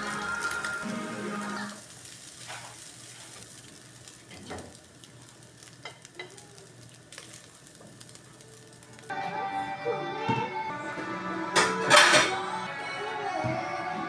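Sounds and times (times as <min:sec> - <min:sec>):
food sizzling in a frying pan: 0:00.0 - 0:09.2.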